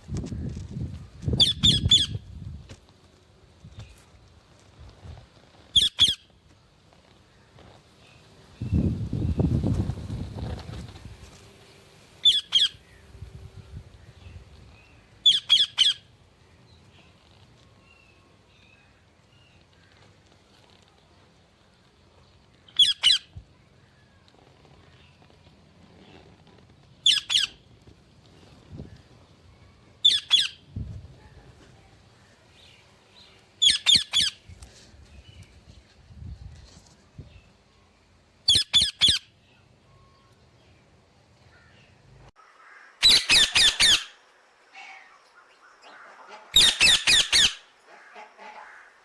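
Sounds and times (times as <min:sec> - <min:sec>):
parakeet screeching calls: 0:12.2 - 0:12.8, 0:43.0 - 0:44.2, 0:46.0 - 0:47.7
faint high chirps: 0:39.4 - 0:40.8
parrot squawking: 0:43.0 - 0:44.2, 0:45.9 - 0:48.9.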